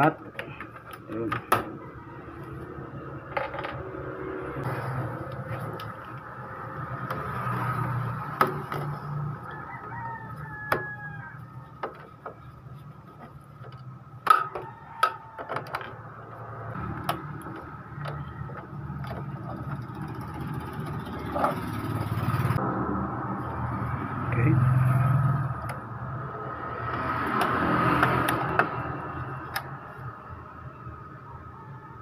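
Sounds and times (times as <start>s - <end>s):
rooster crowing: 1.6s - 3.3s, 9.0s - 11.7s, 14.3s - 16.6s.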